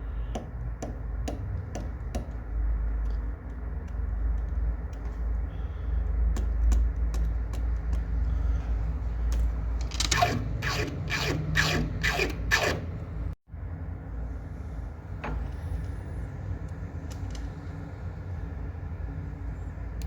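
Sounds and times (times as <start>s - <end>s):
steady low hum: 0.0s - 20.0s
scraping strokes: 10.0s - 12.9s.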